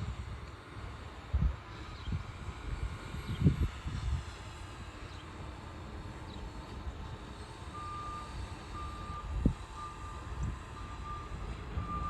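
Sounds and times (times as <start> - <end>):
low engine rumble: 0.0 - 12.0
backup alarm beeping: 7.8 - 12.0.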